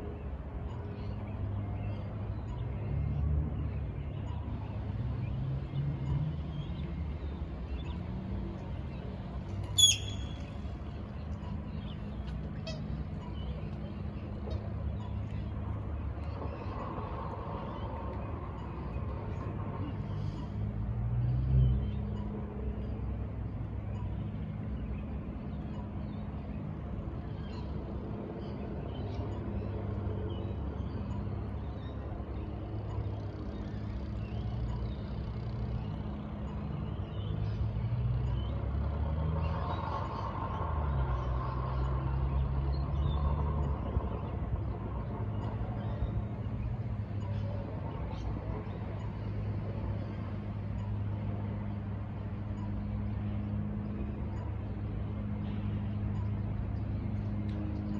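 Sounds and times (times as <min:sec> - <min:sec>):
city street traffic: 0:00.0 - 0:57.9
heavy engine: 0:33.8 - 0:57.9.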